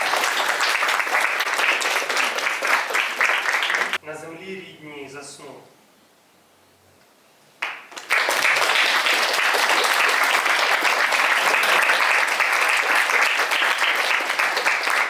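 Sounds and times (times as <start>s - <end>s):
audience applauding: 0.0s - 4.0s, 7.6s - 15.0s.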